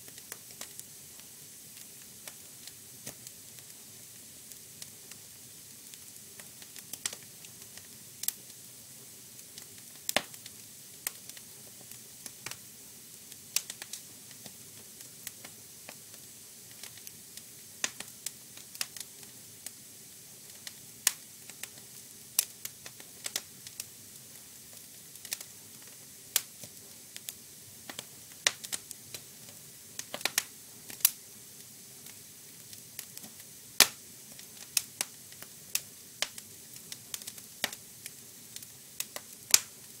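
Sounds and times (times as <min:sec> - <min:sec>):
wood fire crackling: 0:00.0 - 0:40.0.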